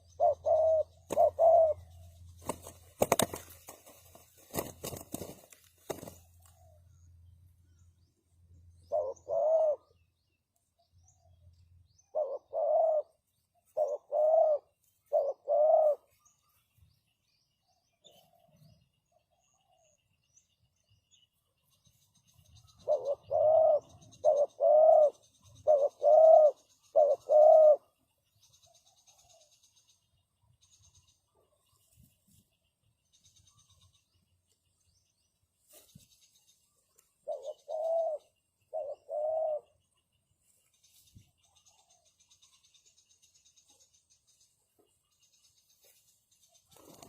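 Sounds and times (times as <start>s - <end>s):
dove cooing: 0.0s - 3.5s, 8.7s - 10.0s, 12.0s - 16.2s, 22.6s - 28.0s, 37.1s - 39.9s
faint high rhythmic chirping: 0.0s - 47.0s.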